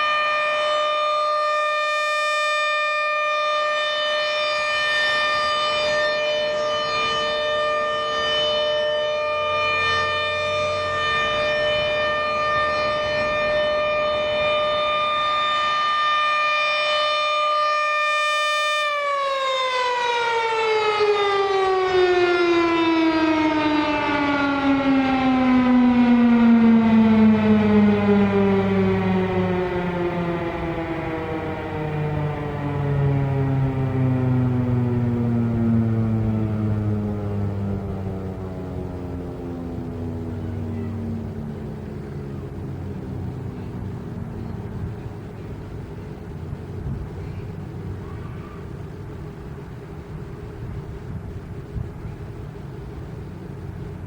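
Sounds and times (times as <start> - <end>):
warning siren steady tone: 0.0 - 54.0.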